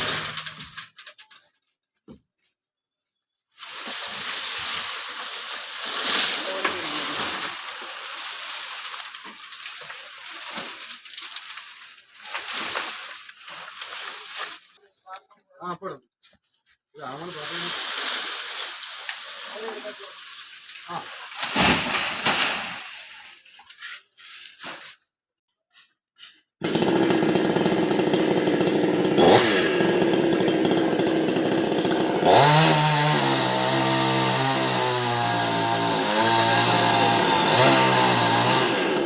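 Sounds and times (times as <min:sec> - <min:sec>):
chainsaw running: 0:00.0 - 0:01.0, 0:04.0 - 0:09.4, 0:26.6 - 0:39.0.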